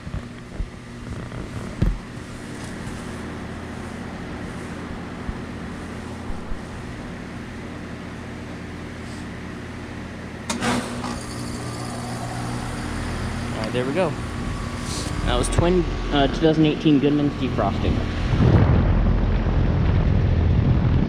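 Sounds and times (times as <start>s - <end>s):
heat pump compressor hum: 0.0s - 20.1s
short loud whoosh: 18.1s - 21.0s.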